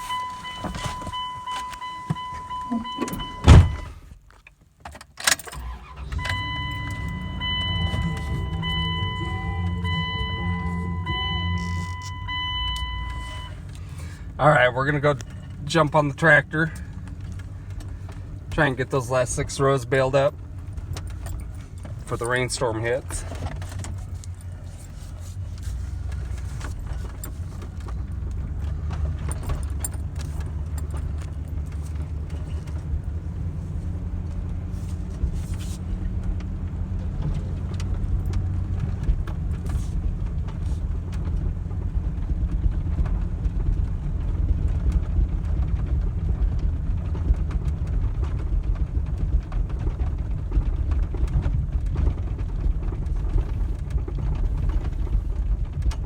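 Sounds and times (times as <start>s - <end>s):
tractor engine rumbling: 0.0s - 56.0s
clicks and rattles: 16.7s - 56.0s.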